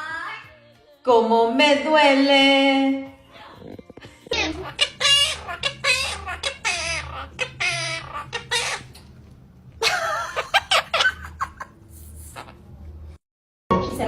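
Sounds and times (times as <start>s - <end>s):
parrot clucking calls: 4.0s - 9.2s, 9.9s - 12.7s.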